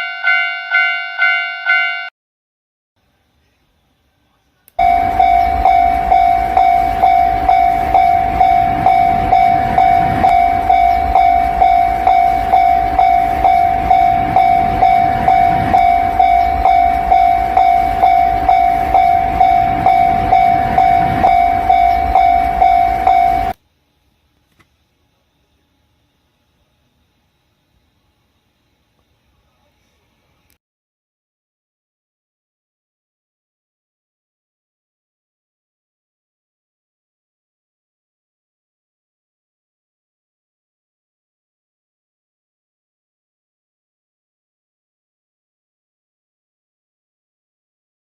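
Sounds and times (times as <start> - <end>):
level-crossing warning bell ringing: 0.0 - 2.1, 4.8 - 23.6.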